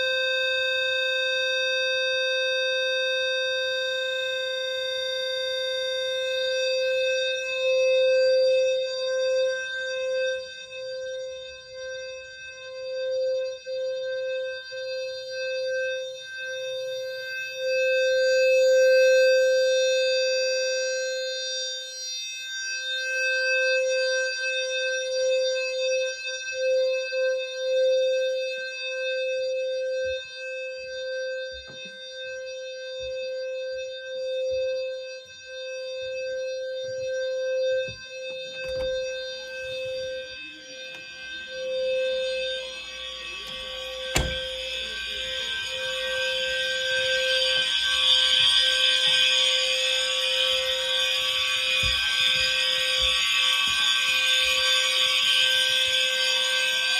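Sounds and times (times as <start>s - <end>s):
fire alarm horn: 0.0s - 56.9s
soft knocks: 43.5s - 44.6s.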